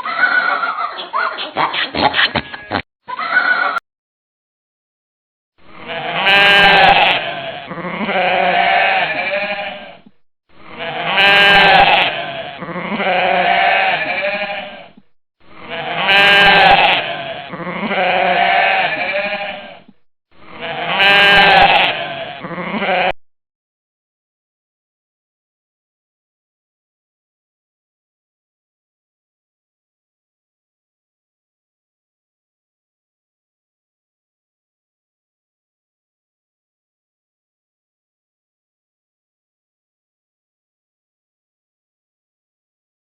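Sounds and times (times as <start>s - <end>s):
sheep bleating: 0.0s - 0.8s, 1.7s - 3.8s, 5.8s - 23.2s.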